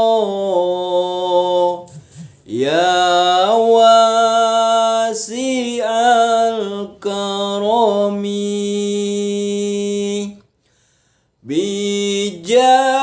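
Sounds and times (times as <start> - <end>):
man singing unaccompanied: 0.0 - 10.5, 11.4 - 13.0.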